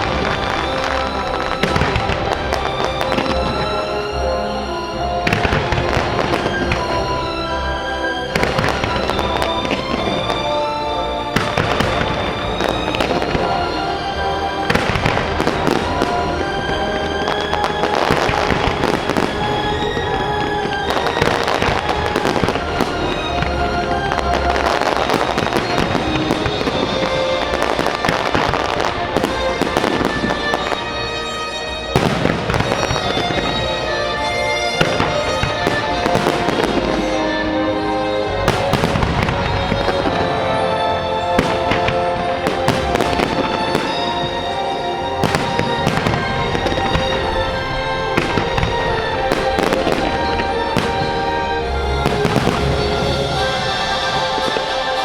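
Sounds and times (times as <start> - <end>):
fireworks bangs and crackling: 0.0 - 3.9, 5.2 - 7.4, 8.3 - 31.2, 31.9 - 55.0
orchestral music: 0.0 - 55.0.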